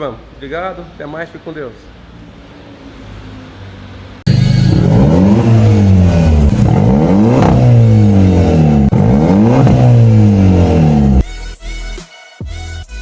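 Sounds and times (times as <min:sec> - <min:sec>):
car engine revving: 0:04.2 - 0:11.2.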